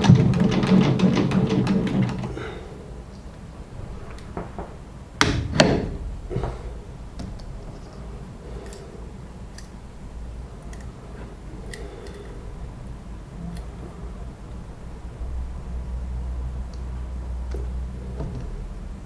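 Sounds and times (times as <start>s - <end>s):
sharp knocks: 0.0s - 2.6s
steady low hum: 0.0s - 19.0s.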